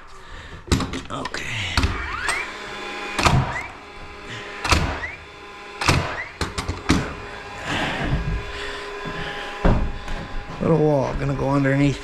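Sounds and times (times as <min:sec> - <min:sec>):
nail gun shots: 0:03.2 - 0:03.7, 0:04.6 - 0:05.2, 0:05.8 - 0:07.0.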